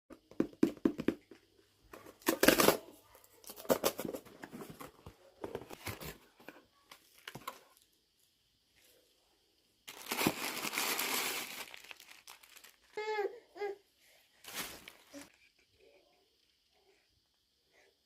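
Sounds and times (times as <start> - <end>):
packaging tearing and crinkling: 9.9 - 13.0.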